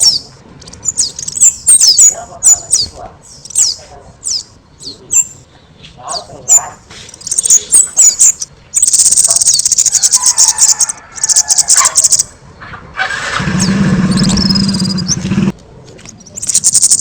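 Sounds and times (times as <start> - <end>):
bird trilling: 0.0 - 5.4, 6.1 - 12.4, 13.0 - 15.6, 16.2 - 17.0
low pulsing buzz: 13.5 - 15.6.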